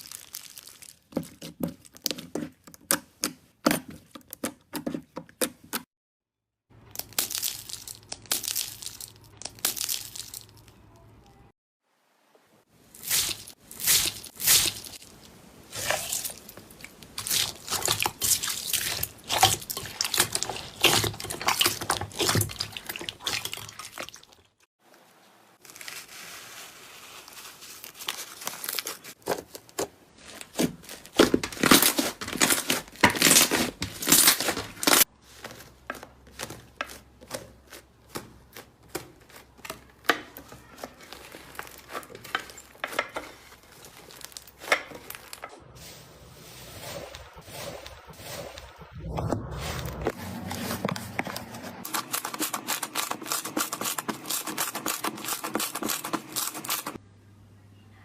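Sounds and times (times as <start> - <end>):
slime crackling and tearing: 0.0 - 2.3, 6.8 - 10.8, 13.0 - 23.0, 27.3 - 35.1, 36.0 - 45.4.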